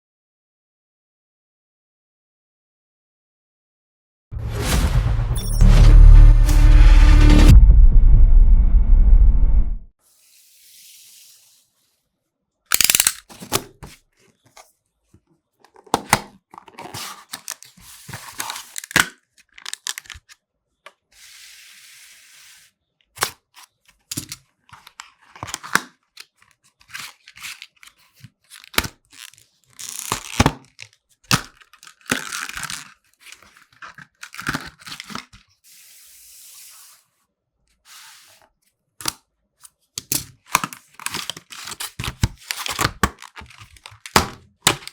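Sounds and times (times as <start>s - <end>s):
paper and plastic tearing: 12.7s - 14.0s, 15.7s - 20.3s, 24.1s - 35.5s, 40.0s - 44.9s.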